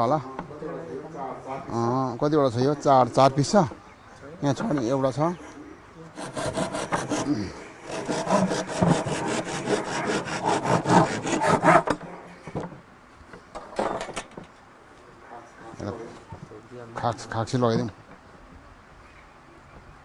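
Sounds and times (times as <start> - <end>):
hand saw cutting wood: 6.2 - 12.1.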